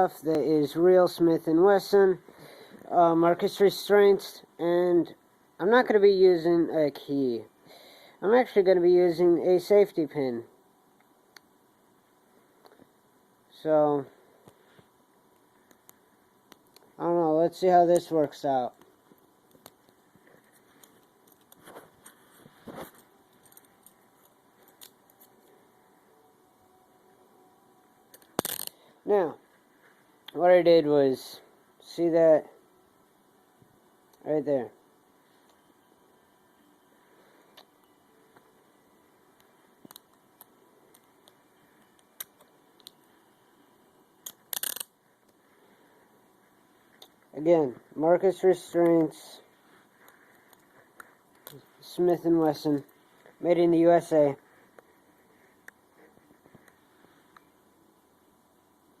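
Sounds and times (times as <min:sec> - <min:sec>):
metallic handcuff clicks: 0:28.1 - 0:28.8, 0:44.2 - 0:44.9
metallic clicks of pin in lock: 0:44.2 - 0:44.9.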